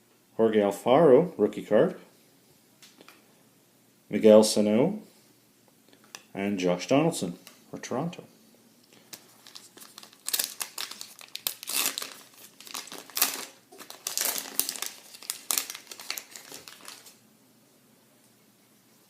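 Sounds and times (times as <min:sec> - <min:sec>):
wrapper being torn and crinkled: 0:09.1 - 0:17.2.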